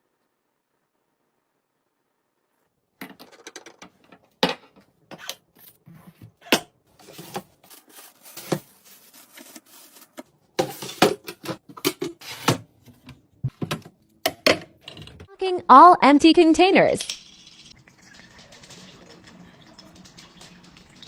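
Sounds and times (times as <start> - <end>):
food containers clattering: 3.0 - 15.3.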